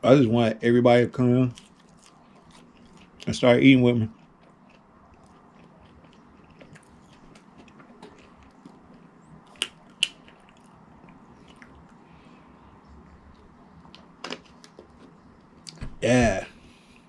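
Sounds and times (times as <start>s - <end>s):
person chewing food: 1.5s - 3.3s, 4.0s - 12.6s.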